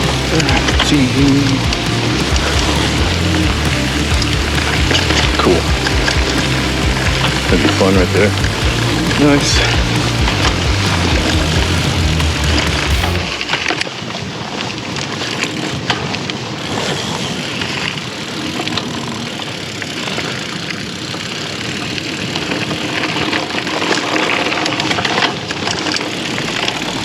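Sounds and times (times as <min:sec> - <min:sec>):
tyres and air rushing: 0:00.0 - 0:13.9.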